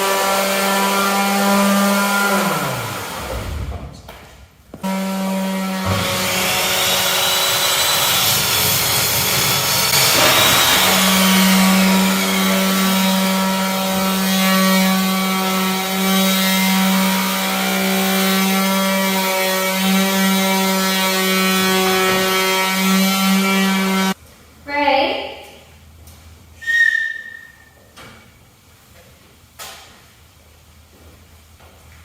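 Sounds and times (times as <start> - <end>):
electric power tool humming: 5.6 - 18.0.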